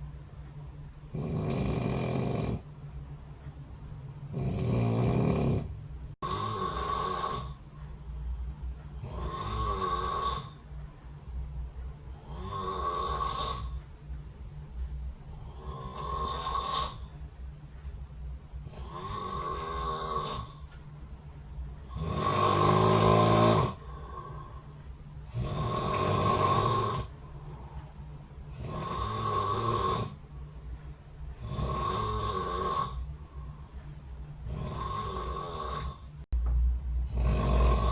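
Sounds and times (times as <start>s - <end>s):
steady low hum: 0.0s - 37.9s
person snoring: 1.1s - 2.6s, 4.3s - 7.6s, 9.0s - 10.6s, 12.1s - 13.8s, 15.3s - 17.1s, 18.6s - 20.7s, 21.9s - 24.6s, 25.2s - 27.8s, 28.5s - 30.2s, 31.4s - 33.6s, 34.4s - 36.1s, 37.0s - 37.9s.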